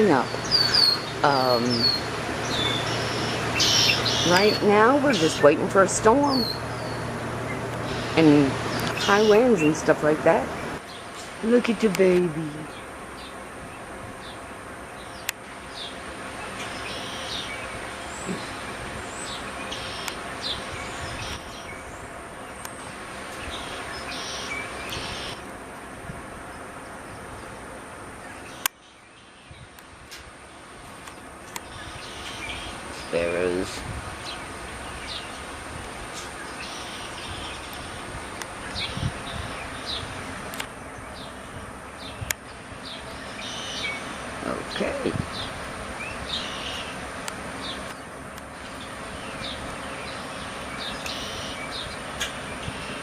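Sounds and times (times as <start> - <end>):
bird chirps: 0.0 - 5.6, 14.2 - 22.8, 41.0 - 47.0, 47.6 - 53.0
small songbirds chirping: 0.0 - 25.4, 26.4 - 53.0
outdoor background rush: 0.0 - 53.0.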